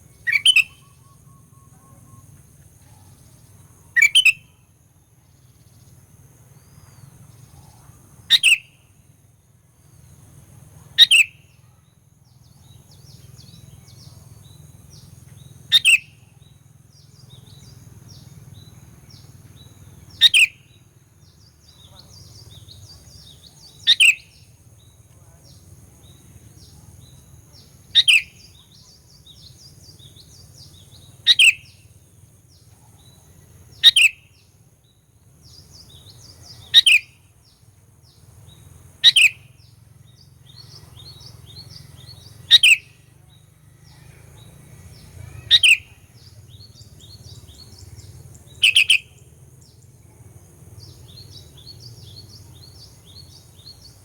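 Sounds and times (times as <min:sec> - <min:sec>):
birds twittering: 0:00.0 - 0:04.6, 0:05.2 - 0:09.0, 0:09.8 - 0:54.0
bird call sweeping downward: 0:45.0 - 0:46.2, 0:48.6 - 0:49.1.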